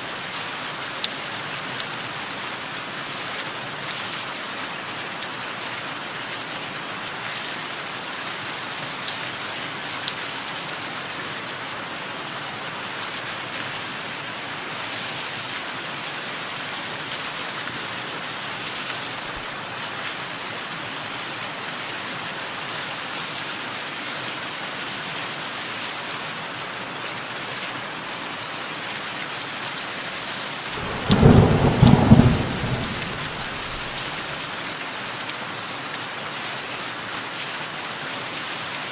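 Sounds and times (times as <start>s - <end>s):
steady rain: 0.0s - 38.9s
thunder clap: 30.7s - 34.3s.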